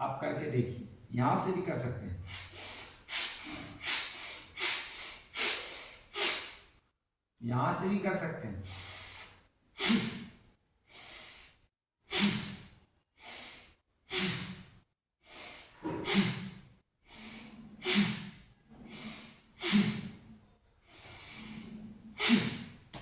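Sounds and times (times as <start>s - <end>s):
man breathing forcefully: 2.3s - 6.6s, 8.7s - 14.7s, 15.3s - 20.3s, 20.9s - 22.8s.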